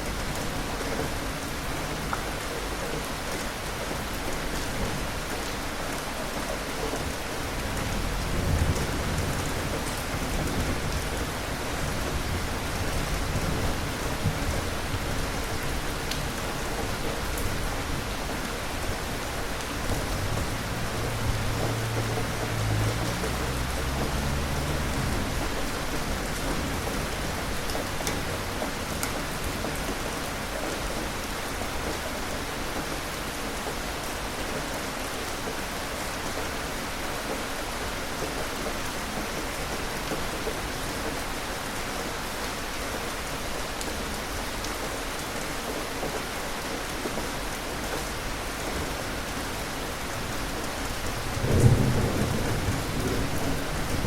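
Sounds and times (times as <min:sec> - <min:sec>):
heavy rain falling: 0:00.0 - 0:54.0
thunder rolling: 0:07.1 - 0:15.1, 0:19.8 - 0:27.5, 0:51.2 - 0:54.0.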